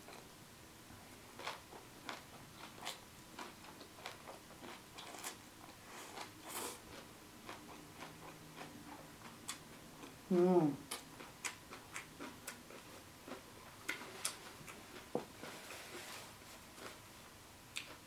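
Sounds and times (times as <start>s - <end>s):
crunchy chewing: 1.3s - 10.2s, 10.8s - 15.5s.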